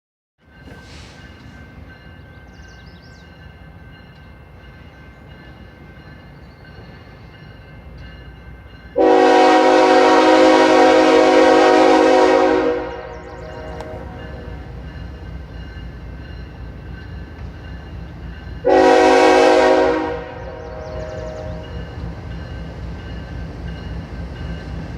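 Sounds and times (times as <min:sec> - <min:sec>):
locomotive horn chord: 0:09.0 - 0:14.8, 0:18.6 - 0:21.7.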